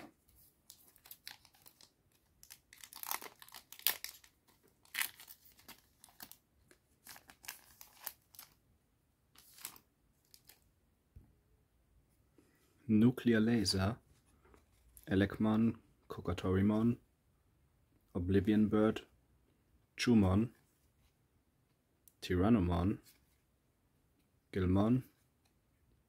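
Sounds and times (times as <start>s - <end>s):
foil wrapper crinkling and tearing: 0.7s - 6.4s, 7.0s - 8.6s.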